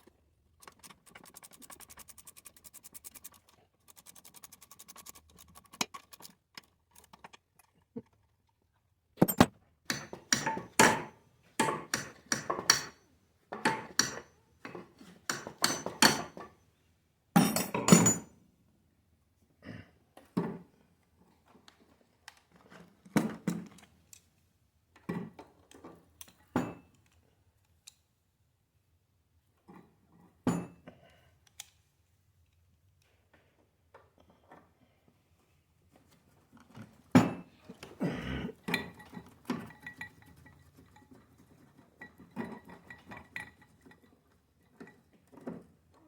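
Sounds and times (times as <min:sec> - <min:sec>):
tools knocking and clinking on metal: 0:09.2 - 0:16.6, 0:17.4 - 0:18.3, 0:38.6 - 0:41.4, 0:42.0 - 0:44.1.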